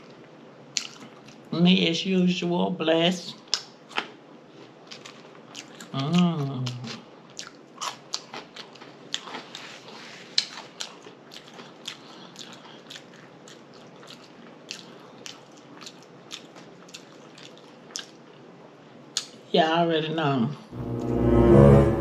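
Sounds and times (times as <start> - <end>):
person chewing with lip smacking: 0.0 - 1.5, 3.4 - 18.4, 19.1 - 19.4.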